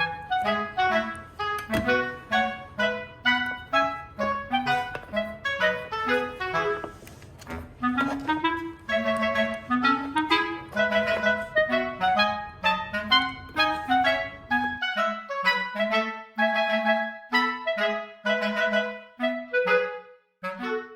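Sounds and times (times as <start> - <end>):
clarinet playing staccato music: 0.0 - 20.9.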